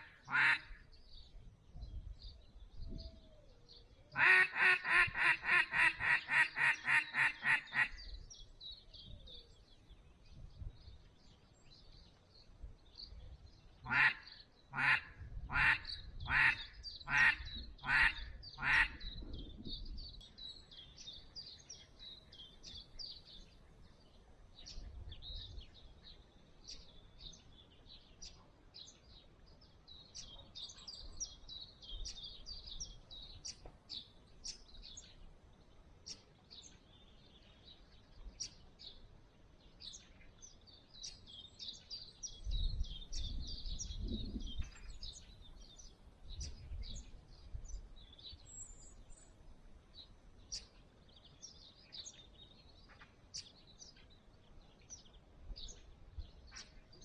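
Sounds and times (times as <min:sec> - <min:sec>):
songbirds chirping: 0:00.0 - 0:57.0
duck call quacks: 0:00.3 - 0:00.7, 0:04.2 - 0:08.0, 0:13.9 - 0:14.2, 0:14.8 - 0:19.0.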